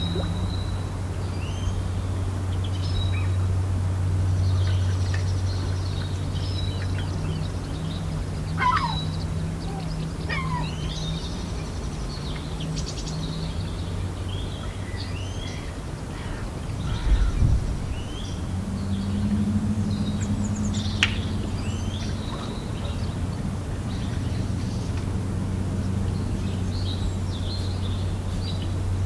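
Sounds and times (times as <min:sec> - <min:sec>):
birds chirping: 0:00.0 - 0:29.0
low hum: 0:00.0 - 0:29.0
low thumps: 0:16.8 - 0:21.5.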